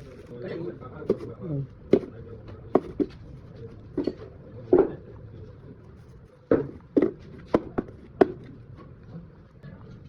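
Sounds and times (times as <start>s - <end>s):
hard objects knocking: 1.1s - 3.2s, 4.0s - 5.0s, 6.5s - 8.6s.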